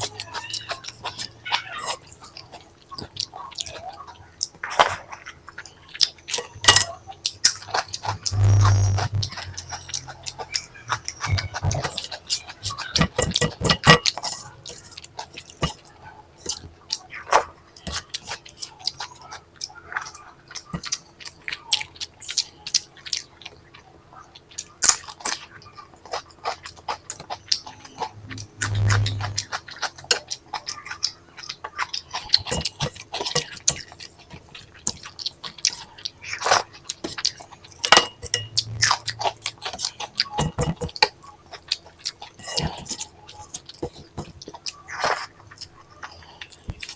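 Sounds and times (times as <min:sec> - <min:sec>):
chewing and mouth smacking: 0:28.8 - 0:46.9.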